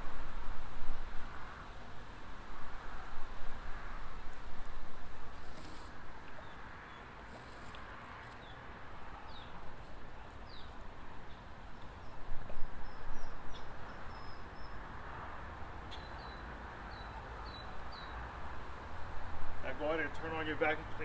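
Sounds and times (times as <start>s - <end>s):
birds chirping: 5.5s - 14.9s, 15.9s - 18.3s.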